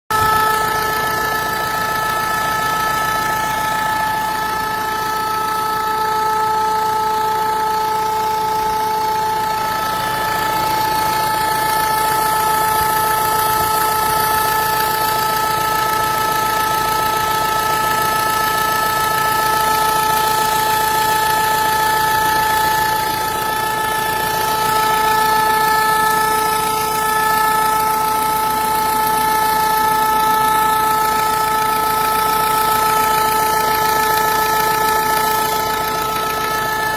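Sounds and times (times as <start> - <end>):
steady engine whine: 0.0 - 36.9
diesel engine running: 0.1 - 36.9.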